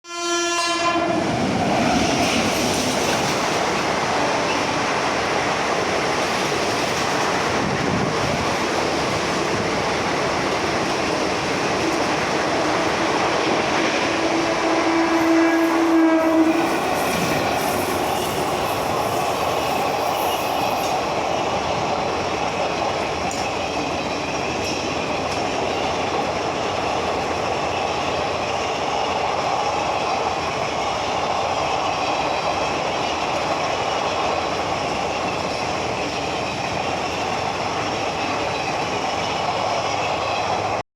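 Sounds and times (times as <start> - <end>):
train horn: 0.0 - 1.3, 14.0 - 18.8
train rumbling and clattering on track: 0.1 - 40.8.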